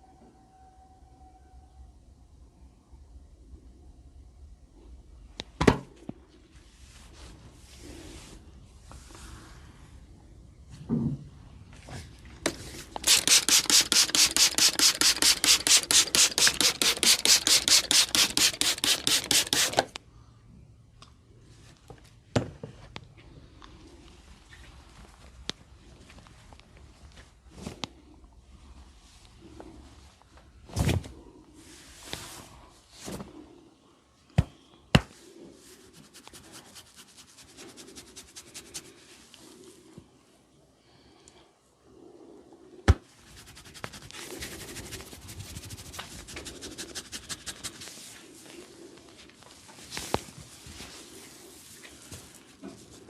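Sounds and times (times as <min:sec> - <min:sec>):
hands rubbing hair: 0:12.6 - 0:19.8, 0:35.6 - 0:39.1, 0:43.2 - 0:48.7.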